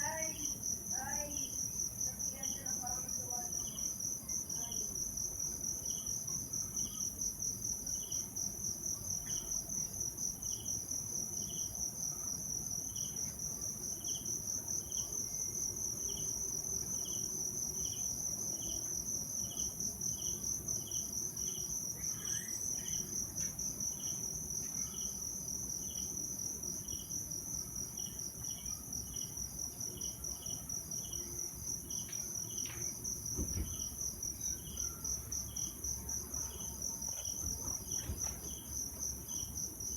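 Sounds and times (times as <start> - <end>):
insects trilling: 0.0 - 39.9
low insect chirp: 0.0 - 39.9.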